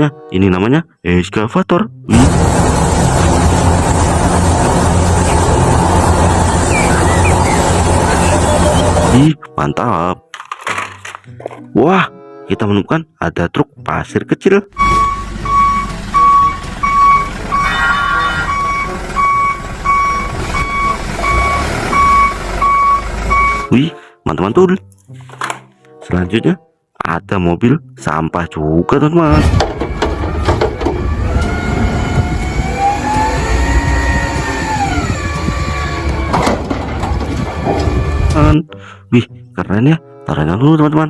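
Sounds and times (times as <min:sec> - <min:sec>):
garbage truck engine running: 0:02.1 - 0:09.2, 0:14.8 - 0:23.7, 0:29.3 - 0:38.4
vehicle reversing alarm beeps: 0:06.7 - 0:09.1, 0:14.8 - 0:23.7.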